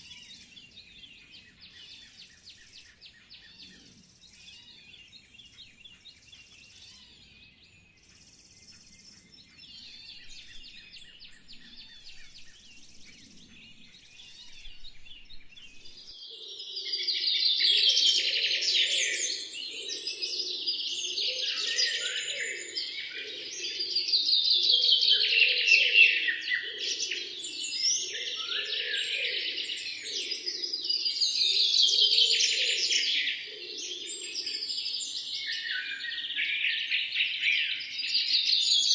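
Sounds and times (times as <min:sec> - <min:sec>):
faint bird chirps: 0:00.0 - 0:24.0.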